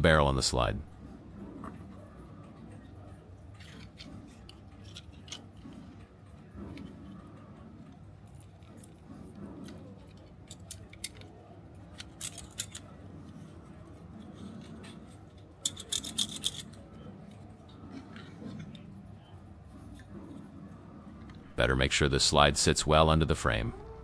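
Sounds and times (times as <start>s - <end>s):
plastic toy parts clicking: 3.5s - 7.4s, 8.2s - 18.8s.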